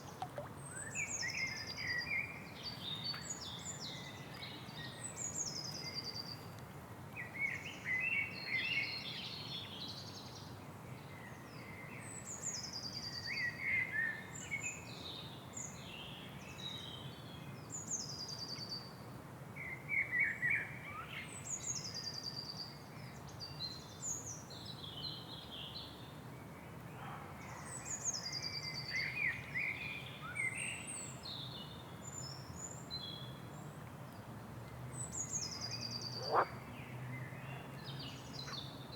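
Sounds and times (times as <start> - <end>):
birds calling and chirping: 36.2 - 36.5.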